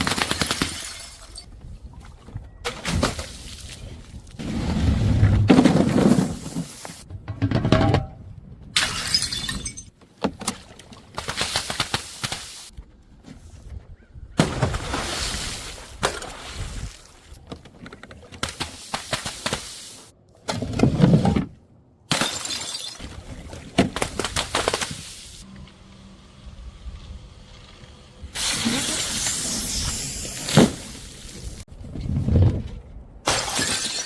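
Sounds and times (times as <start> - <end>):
glass bottles smashing: 0.3 - 1.5, 8.8 - 9.9, 22.1 - 23.2, 33.3 - 34.0.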